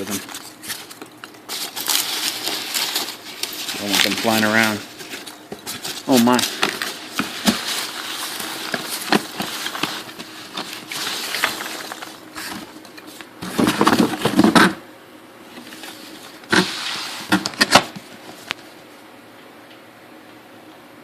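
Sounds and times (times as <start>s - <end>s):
packing peanuts rustling: 0.0s - 14.5s.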